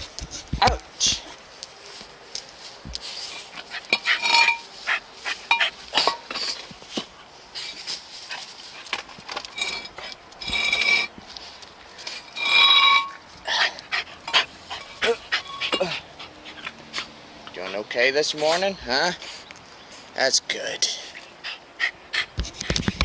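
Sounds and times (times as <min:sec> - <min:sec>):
dog whining: 0:13.6 - 0:17.1.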